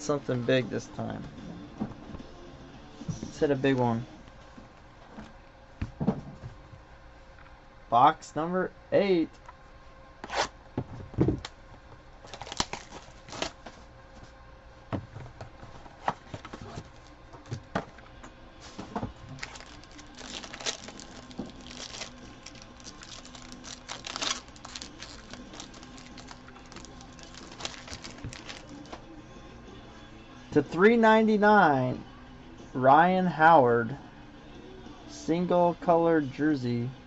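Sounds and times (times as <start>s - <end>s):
wrapper crinkling and tearing: 12.2s - 13.6s, 19.3s - 29.0s
card stock clicking and rustling: 12.2s - 13.8s, 19.3s - 29.0s.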